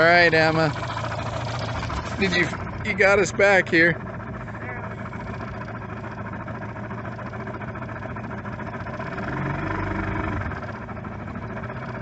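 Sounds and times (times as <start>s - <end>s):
outboard motor running: 0.0s - 12.0s.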